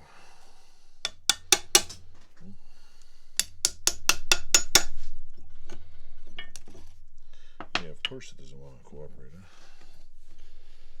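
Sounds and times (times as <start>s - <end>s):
hammer striking steel vise: 1.0s - 2.3s, 3.4s - 5.1s, 7.6s - 8.3s.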